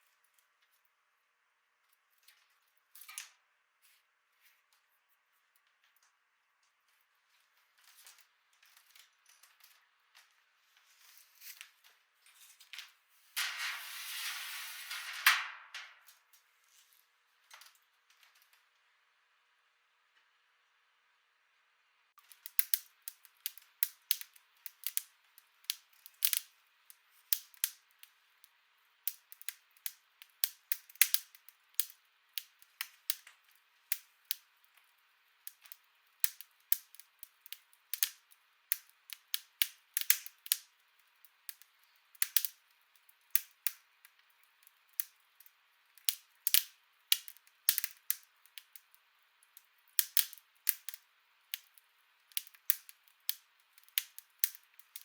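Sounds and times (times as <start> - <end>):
wood fire crackling: 4.5 - 18.7, 22.2 - 55.0
faint hiss: 13.2 - 16.2.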